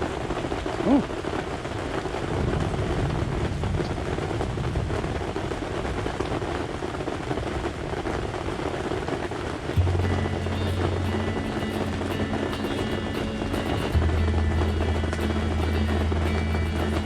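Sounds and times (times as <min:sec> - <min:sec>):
wind rumble on microphone: 0:00.0 - 0:10.4
heavy rain: 0:00.0 - 0:17.0.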